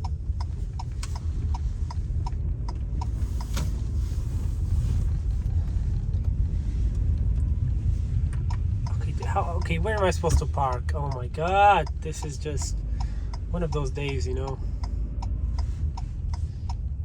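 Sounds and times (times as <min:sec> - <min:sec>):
light regular ticking: 0:00.0 - 0:04.0, 0:05.1 - 0:17.0
vehicle driving rumble inside cabin: 0:00.0 - 0:17.0.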